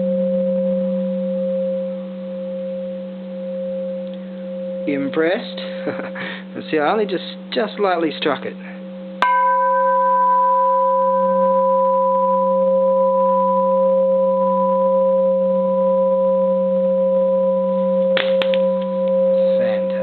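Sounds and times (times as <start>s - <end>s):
temple bell ringing: 9.2s - 20.0s.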